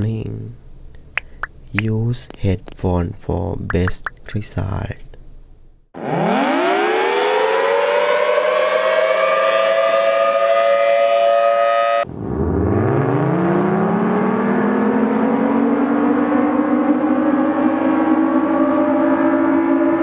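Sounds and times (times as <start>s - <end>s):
lower-pitched siren winding up: 6.0s - 20.0s
tornado siren winding up and wailing: 6.0s - 20.0s.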